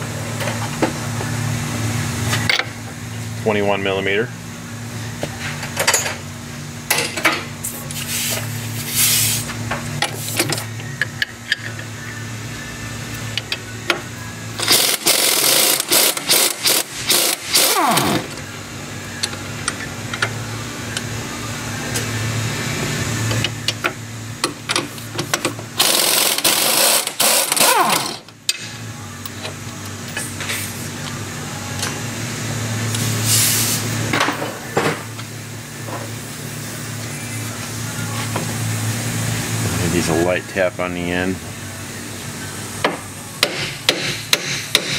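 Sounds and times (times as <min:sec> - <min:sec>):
low shop hum: 0:00.0 - 0:44.9
impact wrench rattling: 0:25.8 - 0:28.2.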